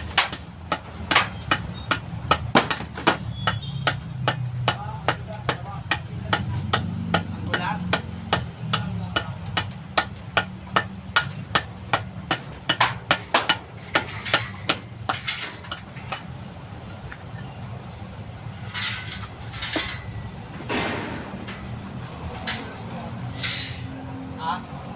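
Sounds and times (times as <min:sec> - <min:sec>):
hammer strikes: 0:00.1 - 0:16.3.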